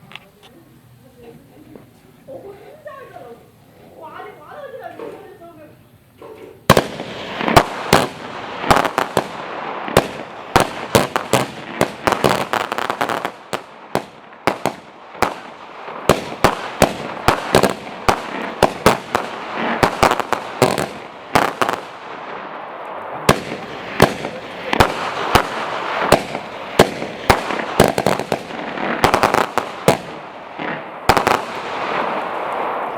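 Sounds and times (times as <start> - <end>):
firework launch pops: 6.2 - 22.0, 23.2 - 32.9
hiss of burning tubes: 23.3 - 28.4.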